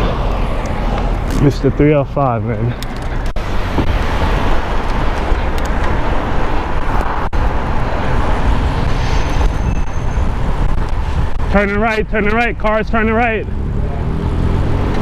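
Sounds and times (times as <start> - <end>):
street traffic: 0.0 - 15.0
wind rushing: 3.0 - 12.6.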